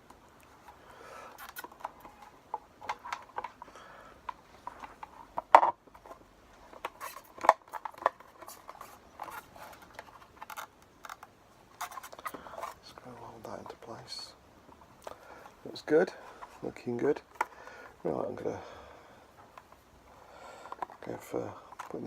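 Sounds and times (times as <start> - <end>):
plastic clicks and rattles: 4.2 - 12.8.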